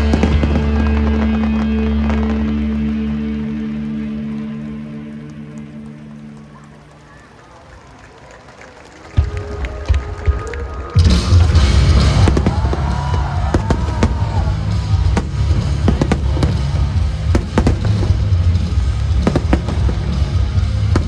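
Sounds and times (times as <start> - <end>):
firework bursts and cracks: 0.0 - 2.5, 11.0 - 21.0
continuous booming rumble: 0.0 - 4.0, 11.0 - 21.0
music soundtrack: 0.0 - 7.6, 9.2 - 21.0.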